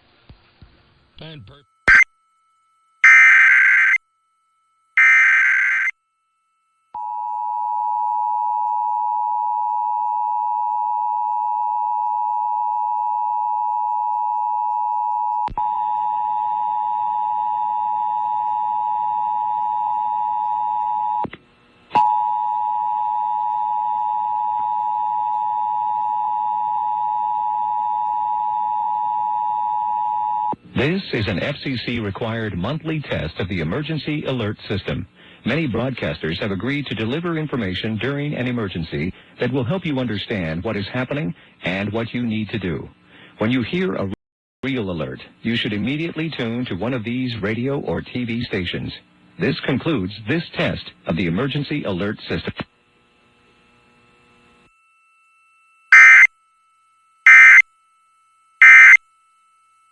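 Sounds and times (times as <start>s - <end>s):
harsh data bursts: 1.9s - 2.1s, 3.0s - 4.0s, 5.0s - 5.9s, 55.9s - 56.3s, 57.3s - 57.6s, 58.6s - 59.0s
two-tone attention signal: 1.9s - 2.1s, 3.0s - 4.0s, 5.0s - 5.9s, 55.9s - 56.3s, 57.3s - 57.6s, 58.6s - 59.0s.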